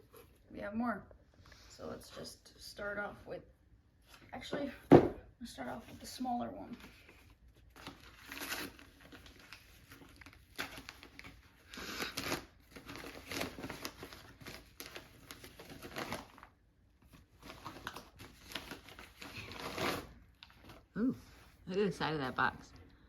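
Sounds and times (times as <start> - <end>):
cardboard box crinkling and tearing: 7.8 - 16.5, 17.4 - 20.8.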